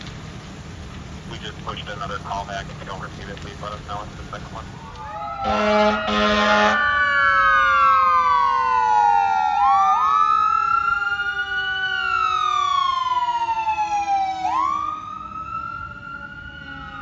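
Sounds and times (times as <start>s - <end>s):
fire engine siren wailing: 0.0s - 17.0s
second siren tone: 4.8s - 17.0s.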